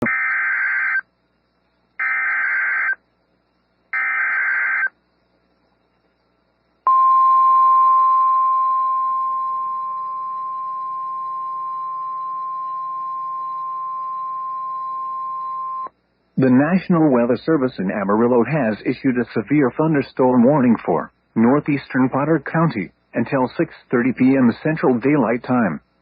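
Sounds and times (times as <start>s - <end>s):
steady warning alarm tone: 2.0s - 3.0s, 4.0s - 4.9s, 6.9s - 15.9s.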